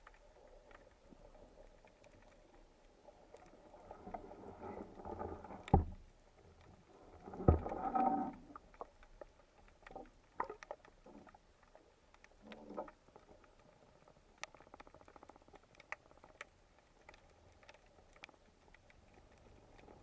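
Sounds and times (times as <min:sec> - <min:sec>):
underwater rushes: 0:00.0 - 0:09.0
underwater clicks and crackles: 0:00.0 - 0:20.0.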